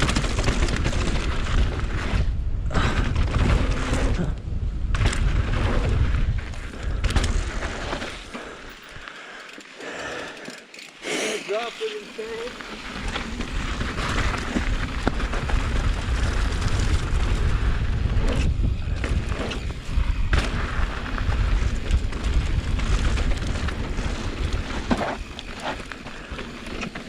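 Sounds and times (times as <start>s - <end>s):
wind buffeting microphone: 0.0s - 7.9s, 13.0s - 25.6s
bike knocking and rattling: 0.0s - 27.0s
bike tyres on dirt trail: 0.0s - 27.0s.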